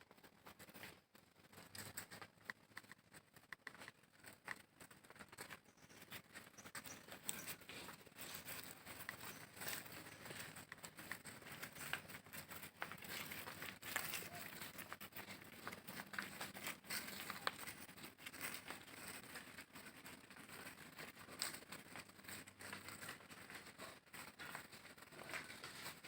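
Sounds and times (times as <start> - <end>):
cattle tearing grass: 6.8 - 26.0.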